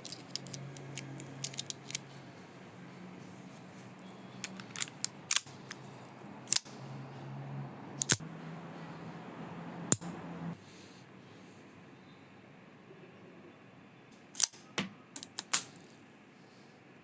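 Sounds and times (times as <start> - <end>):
pistol mechanism clicks and snaps: 0.0 - 2.1, 4.4 - 5.8, 8.0 - 8.2, 14.4 - 16.0.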